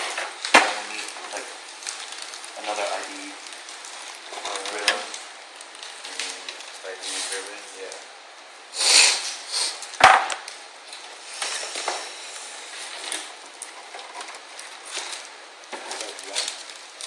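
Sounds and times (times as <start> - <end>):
computer parts rustling and clicking: 0.0 - 8.0, 12.6 - 17.0
sharp knock: 10.0 - 10.4.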